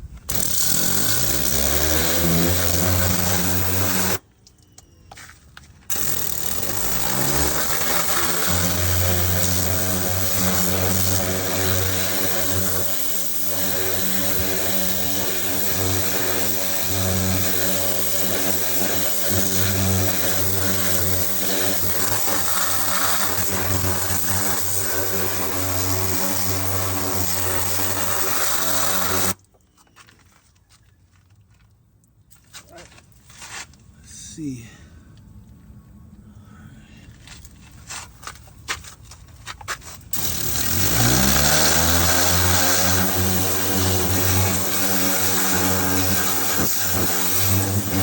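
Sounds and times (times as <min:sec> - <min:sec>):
pressure washer motor and pump: 0:00.2 - 0:04.3, 0:05.9 - 0:29.4, 0:40.0 - 0:48.0
water spray hissing: 0:00.3 - 0:04.2, 0:05.9 - 0:29.4, 0:40.1 - 0:48.0.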